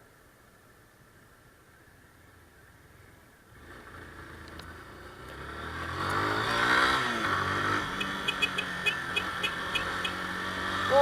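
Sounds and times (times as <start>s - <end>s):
motorcycle engine accelerating: 3.5s - 11.0s.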